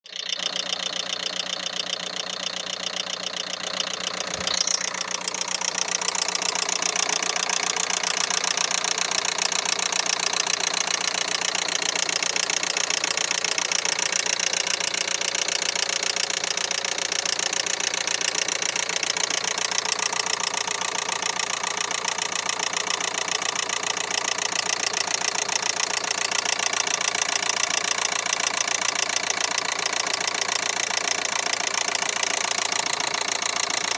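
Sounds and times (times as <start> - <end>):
diesel engine idling with knock: 0.1 - 33.9.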